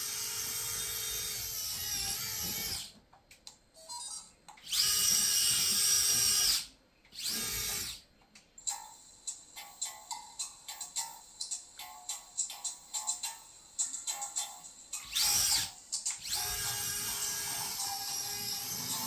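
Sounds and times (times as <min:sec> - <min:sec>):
small electric motors whining: 0:00.0 - 0:02.9, 0:04.6 - 0:08.0, 0:15.0 - 0:19.0.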